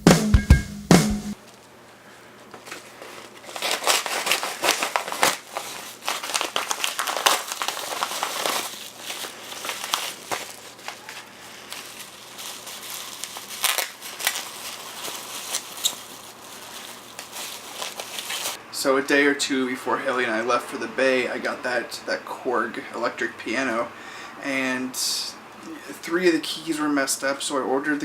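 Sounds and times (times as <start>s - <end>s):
material crinkling and crackling: 2.4s - 18.6s.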